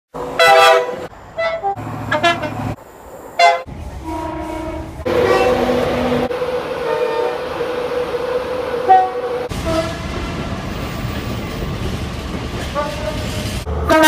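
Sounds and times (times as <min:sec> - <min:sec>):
train air horn blasts: 0:00.4 - 0:02.8, 0:03.4 - 0:07.6, 0:08.3 - 0:10.1, 0:12.8 - 0:14.0.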